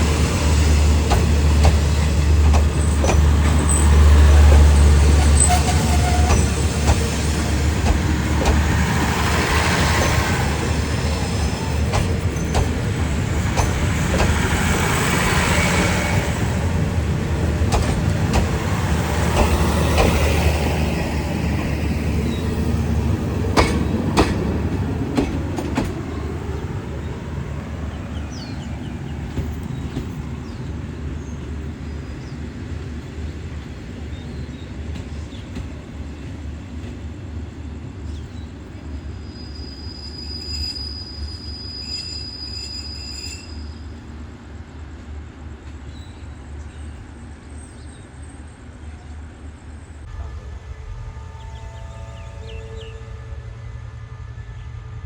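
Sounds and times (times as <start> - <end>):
wheels clacking over rail joints: 0.0 - 26.7
passenger train rumbling: 0.0 - 55.0.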